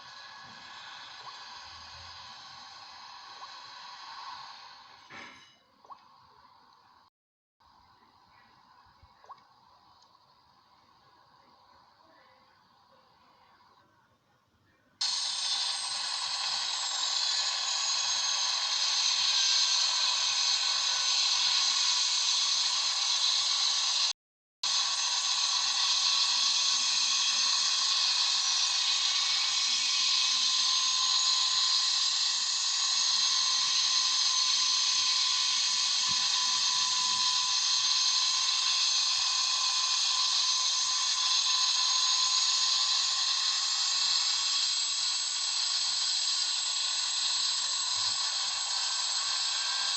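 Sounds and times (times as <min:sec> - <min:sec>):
turbine engine whine: 0:00.0 - 0:05.3, 0:15.0 - 0:49.9.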